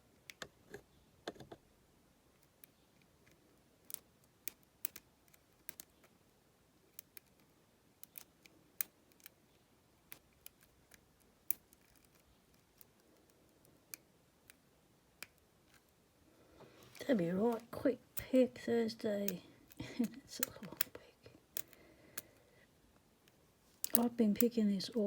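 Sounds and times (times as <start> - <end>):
lock pick clicking in padlock: 3.8 - 6.0, 8.0 - 9.4, 23.8 - 24.5.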